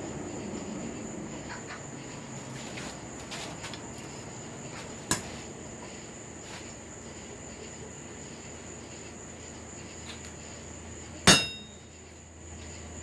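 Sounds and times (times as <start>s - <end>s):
sharp metallic clank: 11.3s - 11.9s.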